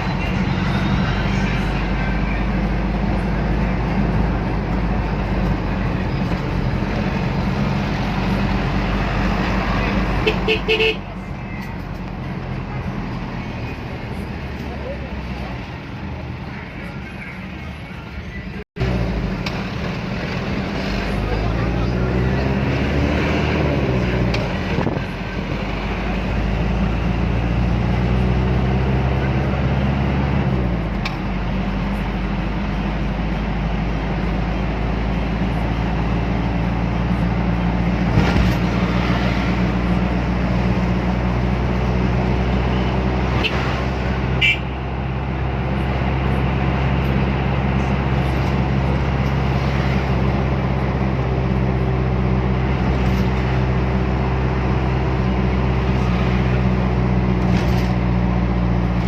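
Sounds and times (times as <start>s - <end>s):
road noise: 0.0s - 59.0s.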